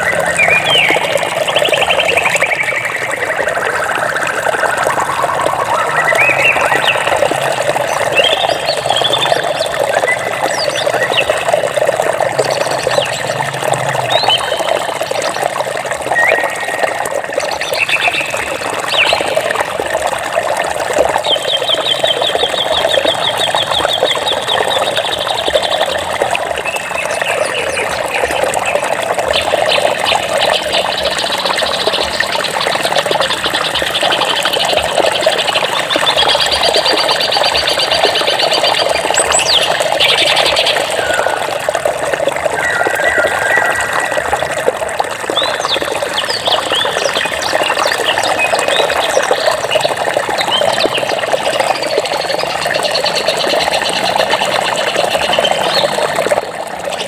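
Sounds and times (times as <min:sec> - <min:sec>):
birds chirping: 0:00.0 - 0:15.5, 0:21.1 - 0:56.1
running water rushing: 0:00.0 - 0:57.0.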